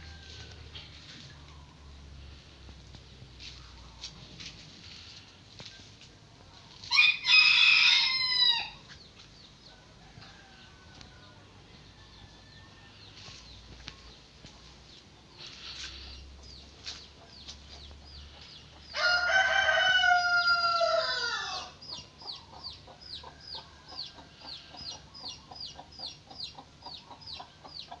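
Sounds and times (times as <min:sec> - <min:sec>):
rooster crowing: 0:00.0 - 0:00.8, 0:06.9 - 0:08.8, 0:09.7 - 0:13.2, 0:18.9 - 0:21.8.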